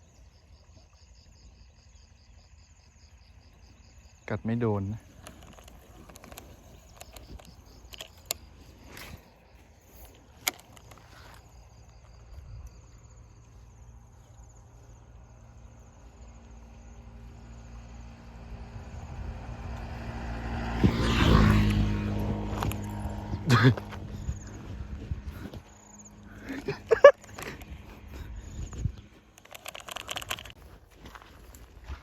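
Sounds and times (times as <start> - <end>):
insect chirring: 0.0 - 19.2, 25.6 - 31.3
sharp clicks: 5.2 - 9.2, 10.0 - 11.4, 29.3 - 30.6
vehicle passing by: 16.0 - 29.3.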